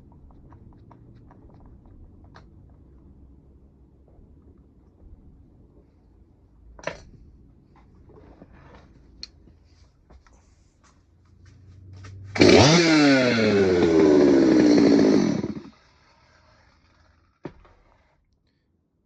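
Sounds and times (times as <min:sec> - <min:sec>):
chainsaw engine revving: 0:12.3 - 0:17.1.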